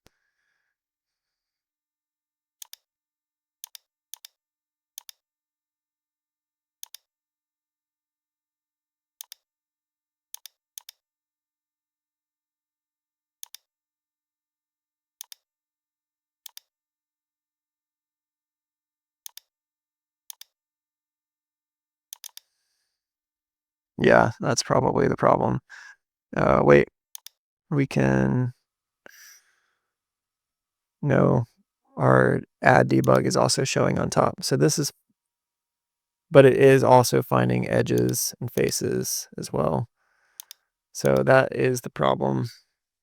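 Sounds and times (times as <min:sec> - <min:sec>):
computer mouse clicks: 0:02.6 - 0:02.8, 0:06.8 - 0:07.1, 0:13.4 - 0:13.7, 0:19.3 - 0:19.5, 0:22.1 - 0:22.5, 0:27.2 - 0:27.4, 0:37.9 - 0:38.8, 0:40.4 - 0:41.3.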